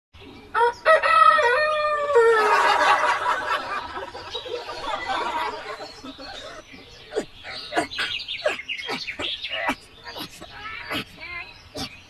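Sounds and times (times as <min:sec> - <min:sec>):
rooster crowing: 0:00.6 - 0:03.4.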